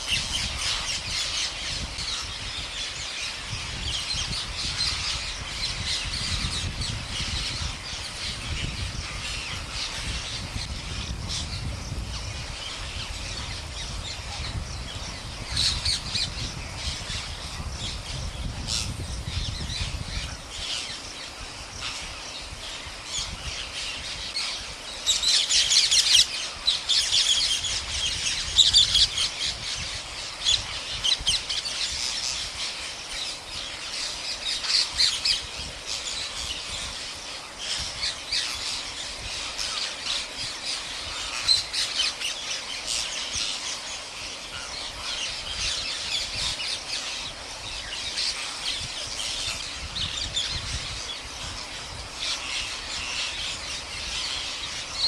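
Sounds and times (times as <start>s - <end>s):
parakeet flock screeching: 18.7s - 21.0s, 36.1s - 55.0s.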